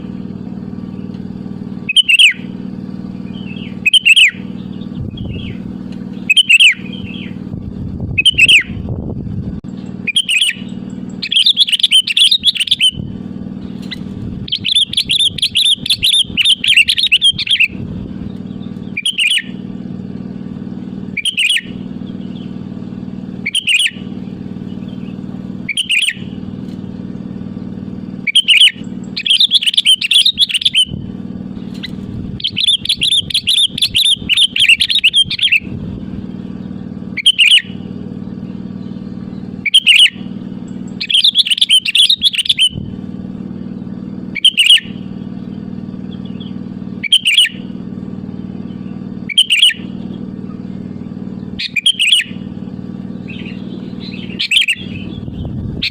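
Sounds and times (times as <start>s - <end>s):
steady low hum: 0.0s - 55.9s
bird singing bright phrases: 0.8s - 8.8s, 9.7s - 26.6s, 27.5s - 55.9s
bird chattering: 1.8s - 2.6s, 3.2s - 7.4s, 8.1s - 8.8s, 9.9s - 19.6s, 21.1s - 22.6s, 23.3s - 26.4s, 28.2s - 35.8s, 37.0s - 37.8s, 38.8s - 42.9s, 44.3s - 47.8s, 48.6s - 50.6s, 51.4s - 55.9s.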